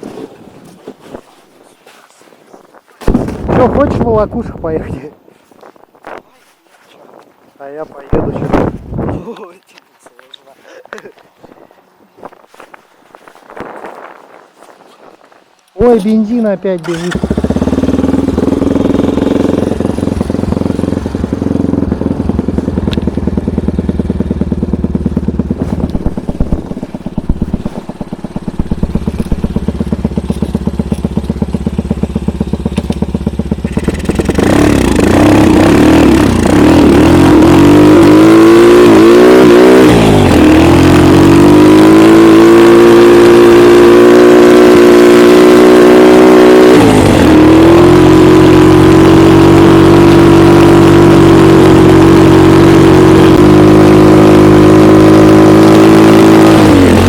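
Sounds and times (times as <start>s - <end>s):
snowmobile engine revving: 15.8s - 57.0s.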